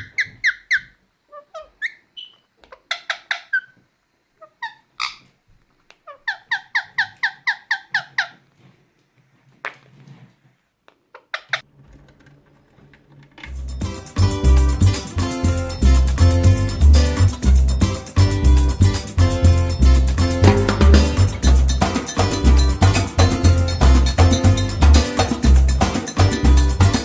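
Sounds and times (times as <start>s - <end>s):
parrots squawking: 0.0s - 3.8s, 4.4s - 5.3s, 6.0s - 8.4s, 11.1s - 11.6s.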